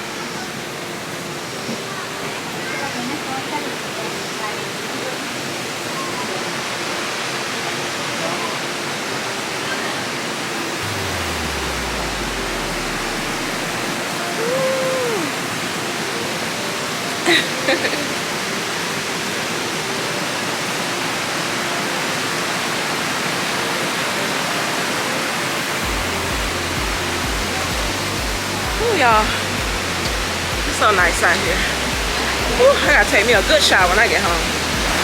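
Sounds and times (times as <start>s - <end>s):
waterfall rushing: 0.0s - 35.0s
rising-and-falling tone: 10.6s - 35.0s.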